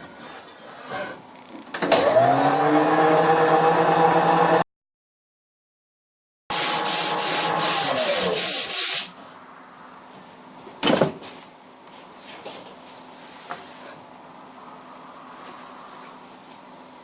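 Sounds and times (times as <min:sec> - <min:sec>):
rough rubbing strokes on metal: 0:06.5 - 0:09.2.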